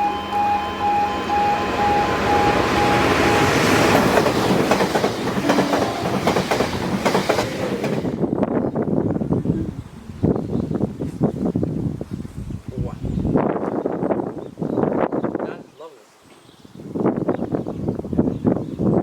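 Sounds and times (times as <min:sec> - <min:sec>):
level crossing alarm beeps: 0:00.0 - 0:04.0
train passing at speed: 0:00.0 - 0:09.4
train wheels clattering: 0:02.3 - 0:08.2.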